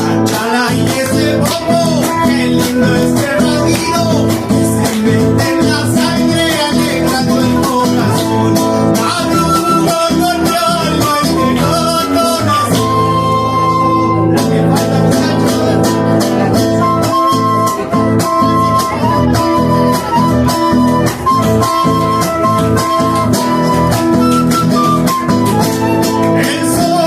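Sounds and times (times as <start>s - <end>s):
acoustic guitars: 0.0s - 27.0s
flute: 5.4s - 27.0s.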